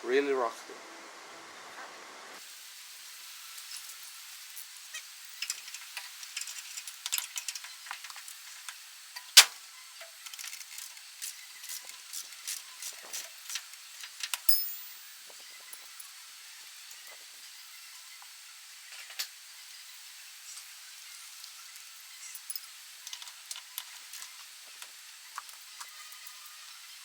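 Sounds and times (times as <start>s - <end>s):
hand tools clicking on metal: 14.3s - 15.2s
sharp loud clink: 14.5s - 15.2s.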